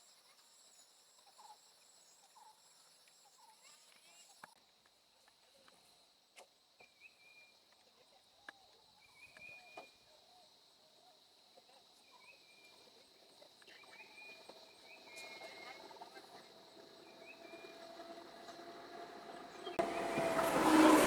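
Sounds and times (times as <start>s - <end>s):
high insect drone: 14.4s - 21.0s.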